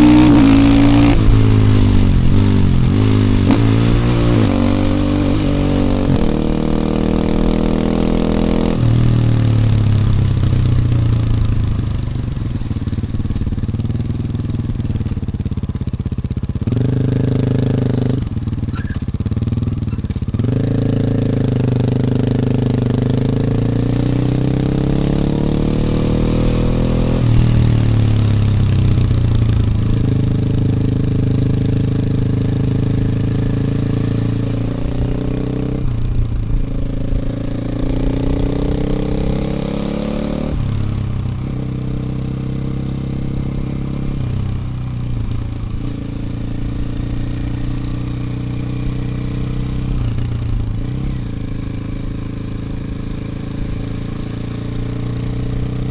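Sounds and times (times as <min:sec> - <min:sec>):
motorcycle engine accelerating: 0:00.0 - 0:55.9.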